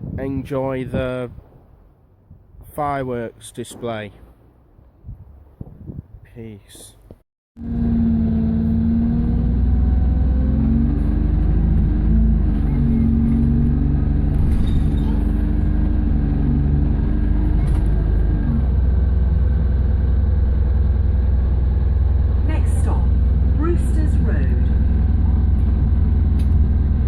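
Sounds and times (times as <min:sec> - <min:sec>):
bus engine rumbling: 0:06.7 - 0:27.0.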